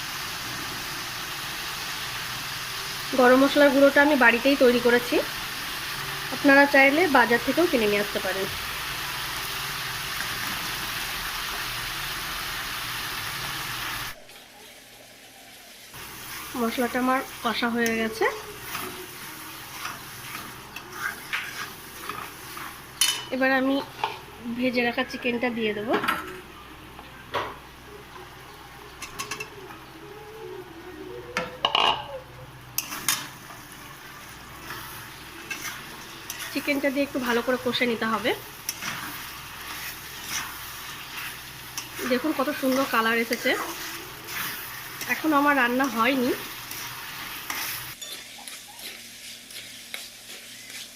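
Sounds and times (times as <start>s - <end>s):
spice paste sizzling in oil: 0.0s - 25.7s, 32.6s - 50.9s
metal spoon scraping cooking pot: 18.6s - 23.3s, 34.6s - 36.8s, 46.7s - 50.9s.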